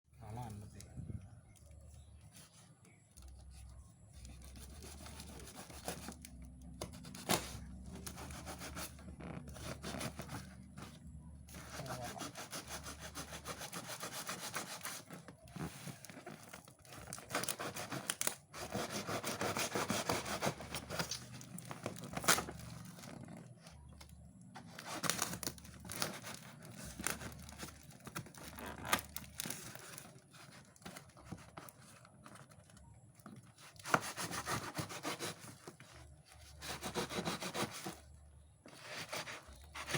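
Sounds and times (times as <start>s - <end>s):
packaging tearing and rustling: 14.4s - 38.1s.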